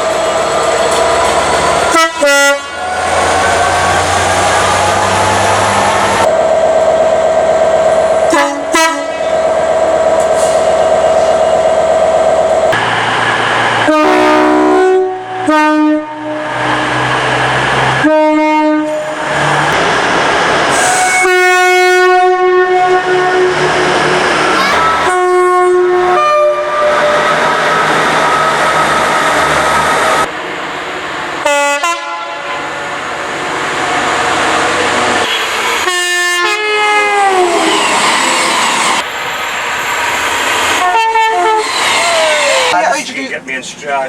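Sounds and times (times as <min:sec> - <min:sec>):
passing train noise: 0:00.0 - 0:44.0
train air horns: 0:01.9 - 0:03.9, 0:08.3 - 0:09.3, 0:13.8 - 0:16.9, 0:18.0 - 0:19.2, 0:20.7 - 0:28.6, 0:31.4 - 0:32.8, 0:35.2 - 0:37.8, 0:40.8 - 0:42.8.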